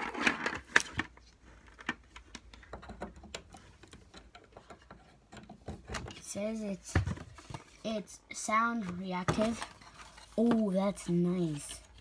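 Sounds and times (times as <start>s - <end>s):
objects clicking and tapping: 0.0s - 6.2s.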